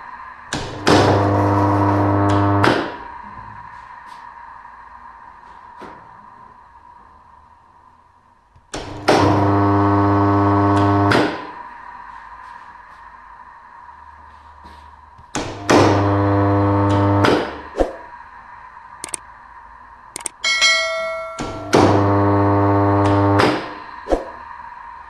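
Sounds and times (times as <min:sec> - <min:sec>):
electric motor humming: 0:09.0 - 0:11.4, 0:15.5 - 0:17.4, 0:21.5 - 0:23.4
high ringing tone: 0:20.2 - 0:23.0.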